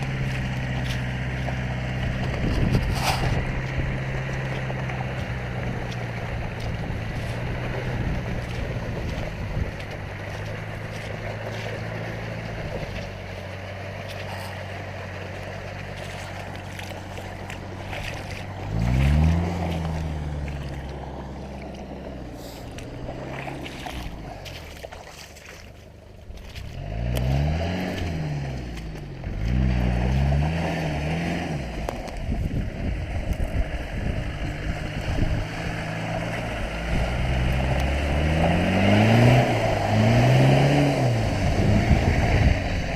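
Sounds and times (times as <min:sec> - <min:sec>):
diesel engine running and revving: 0:00.0 - 0:42.9.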